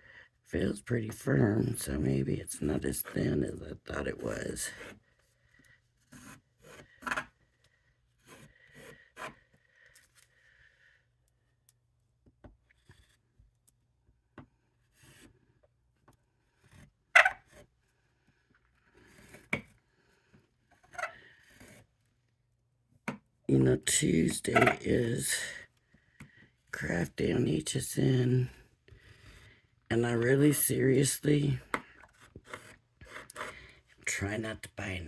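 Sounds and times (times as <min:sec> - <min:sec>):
rubbing and scraping cardstock: 0:02.6 - 0:07.4, 0:18.6 - 0:19.8, 0:29.0 - 0:33.9.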